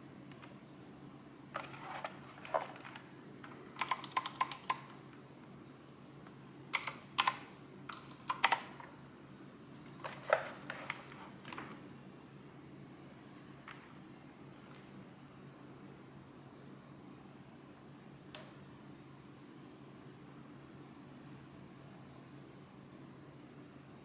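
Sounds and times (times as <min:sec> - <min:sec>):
keyboard keys clacking: 0:03.4 - 0:04.9, 0:06.8 - 0:08.9.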